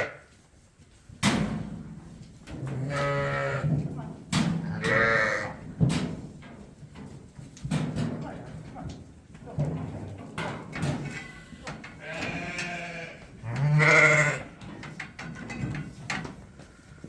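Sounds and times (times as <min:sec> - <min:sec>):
sheep bleating: 0:02.8 - 0:03.6, 0:04.7 - 0:05.6, 0:12.0 - 0:14.6.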